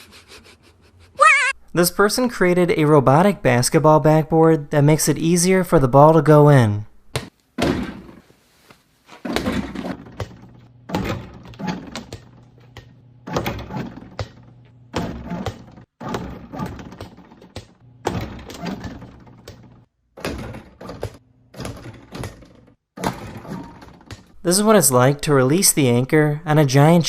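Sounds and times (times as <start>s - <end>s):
basketball hitting backboard and rim: 7.1s - 8.3s, 9.2s - 24.4s.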